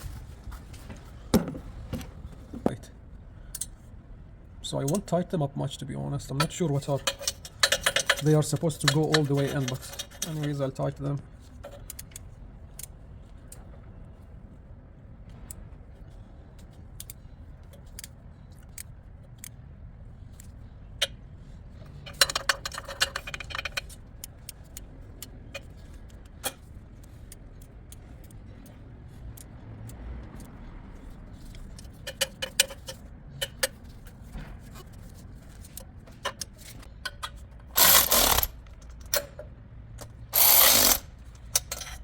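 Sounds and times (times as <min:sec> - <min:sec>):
hand ratchet clicking: 0:07.0 - 0:10.4, 0:36.3 - 0:39.4, 0:40.0 - 0:42.0.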